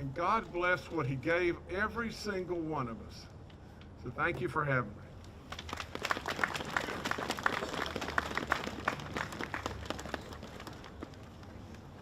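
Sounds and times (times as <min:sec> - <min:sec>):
crowd applauding: 0:05.5 - 0:11.8.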